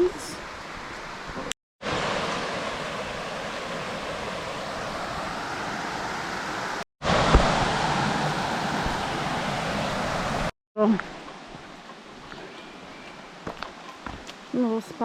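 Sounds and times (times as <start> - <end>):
steady rushing outdoor noise: 0.4 - 10.5
low thump: 7.2 - 7.7.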